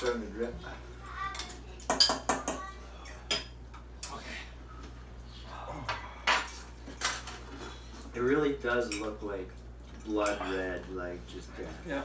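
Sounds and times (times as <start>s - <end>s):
utensils clinking against bowls: 6.3s - 10.8s.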